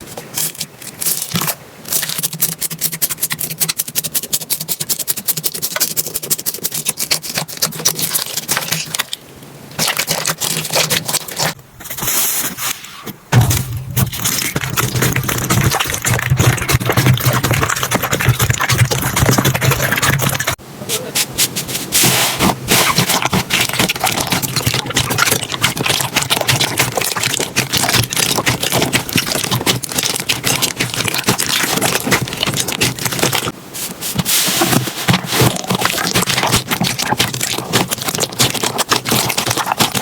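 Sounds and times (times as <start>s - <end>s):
slime crackling and popping: 14.0s - 20.6s, 22.7s - 33.5s, 34.6s - 40.0s.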